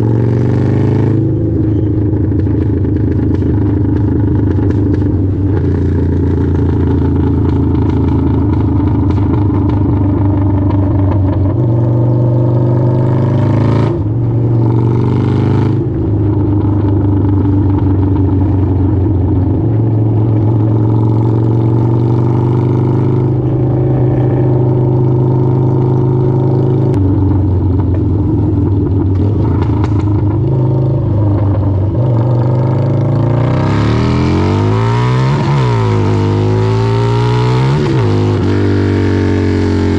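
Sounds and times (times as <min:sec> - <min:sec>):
motorcycle engine idling: 0:01.2 - 0:13.0, 0:15.8 - 0:33.2.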